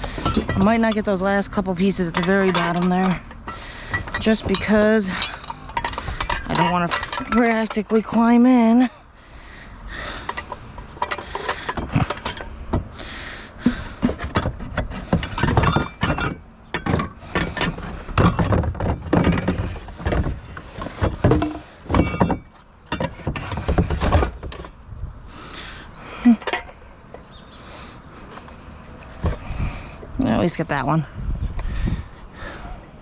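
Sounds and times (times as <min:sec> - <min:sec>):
scrap metal clinking and clanking: 0:00.0 - 0:08.9, 0:09.9 - 0:13.0, 0:13.6 - 0:24.8, 0:26.2 - 0:27.3.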